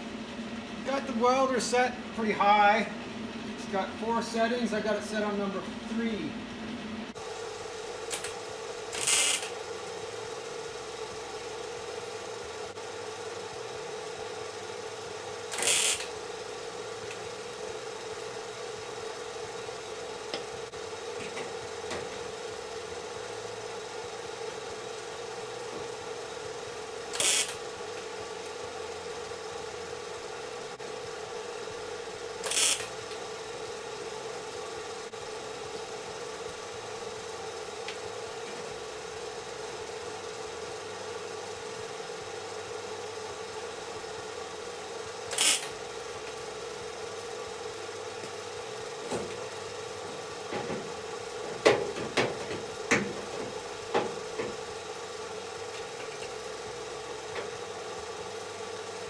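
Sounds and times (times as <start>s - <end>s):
steady electrical hum: 0.0s - 59.0s
welding crackle: 7.6s - 9.7s, 15.5s - 16.2s, 27.0s - 28.6s, 32.4s - 33.3s, 45.3s - 45.8s
sharp clicks and knocks: 50.5s - 54.6s.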